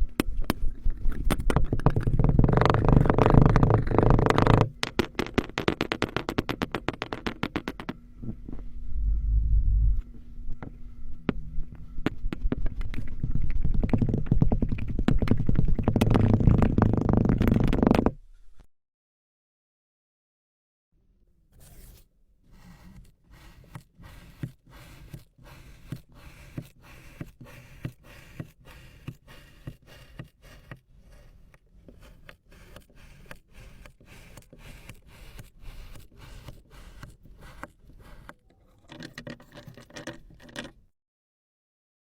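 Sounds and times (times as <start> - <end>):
crisp cutting and scraping: 21.6 - 38.4.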